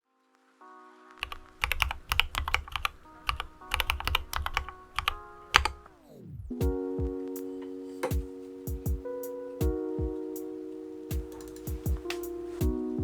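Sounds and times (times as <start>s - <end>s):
soft background music: 0.0s - 13.0s
mechanical keyboard typing: 11.2s - 12.2s.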